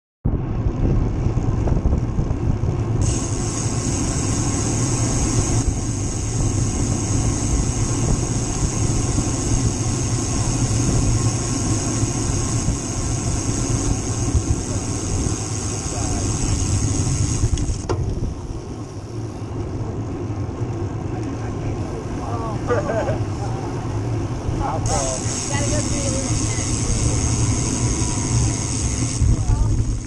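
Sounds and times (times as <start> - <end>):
wind rumble on microphone: 0.2 - 22.7, 23.5 - 30.0
road noise: 0.2 - 30.0
high hiss: 3.0 - 17.8, 24.8 - 30.0.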